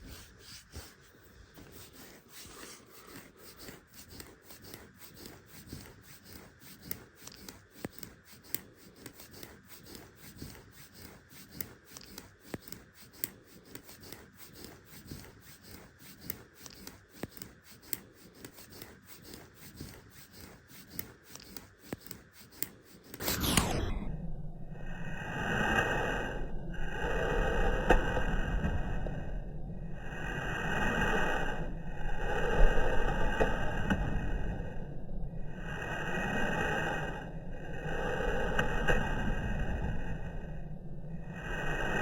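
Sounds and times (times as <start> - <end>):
fingernails scratching skin: 0.0 - 23.2
loud rubbing noise: 0.0 - 24.1.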